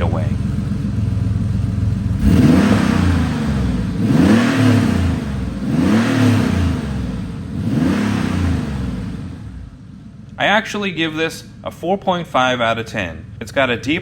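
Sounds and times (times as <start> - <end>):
car engine revving from idle: 0.0 - 10.0.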